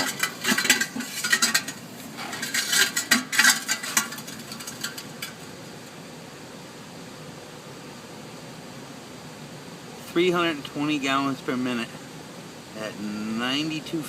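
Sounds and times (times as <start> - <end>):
steady background hiss: 0.0 - 14.0.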